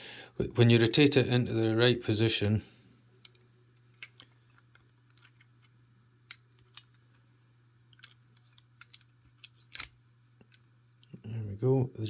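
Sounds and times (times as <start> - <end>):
low steady hum: 0.0 - 12.0
padlock metal clicks: 7.9 - 10.7.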